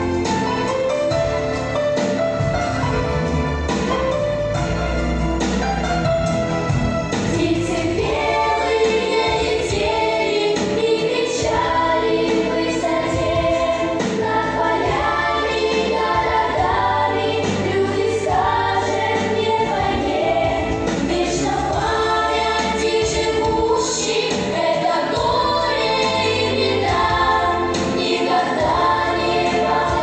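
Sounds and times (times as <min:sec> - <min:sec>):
instrumental backing: 0:00.0 - 0:30.0
children's choir singing: 0:07.2 - 0:30.0.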